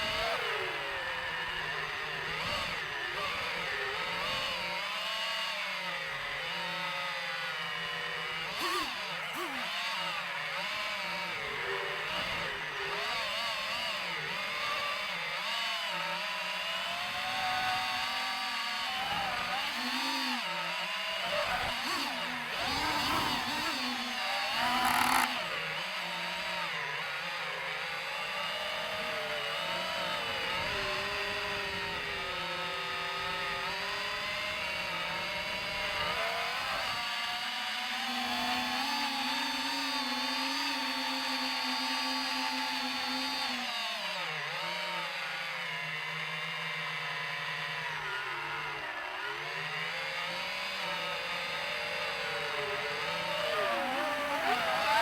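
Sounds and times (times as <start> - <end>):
drone propellers whining: 7.8 - 33.6, 47.7 - 55.0.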